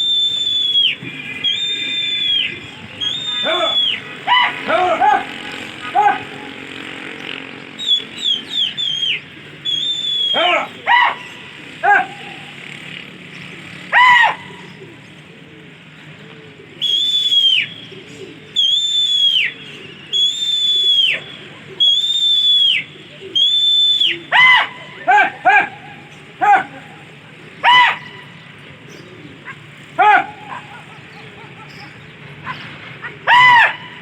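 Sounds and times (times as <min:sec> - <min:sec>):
person whistling shrilly: 0:00.0 - 0:04.8, 0:07.8 - 0:11.1, 0:16.8 - 0:17.8, 0:18.6 - 0:24.7
short low calls: 0:00.0 - 0:15.4.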